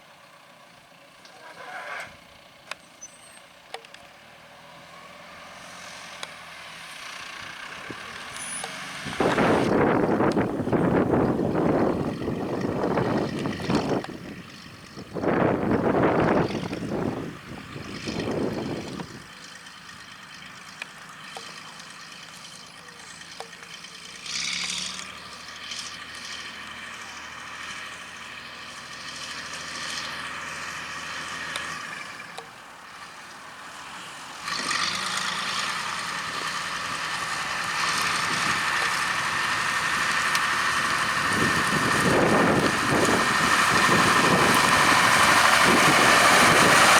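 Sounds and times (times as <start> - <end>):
tractor engine running: 0.0 - 46.9
wind buffeting microphone: 9.0 - 19.3, 36.4 - 46.9.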